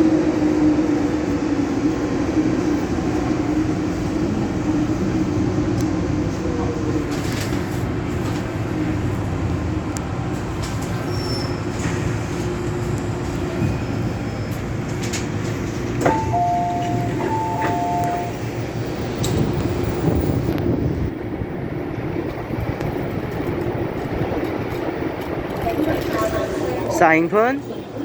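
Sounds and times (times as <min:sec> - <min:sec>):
train running rumble: 0:00.0 - 0:28.0
two-note electronic chime: 0:16.1 - 0:18.4.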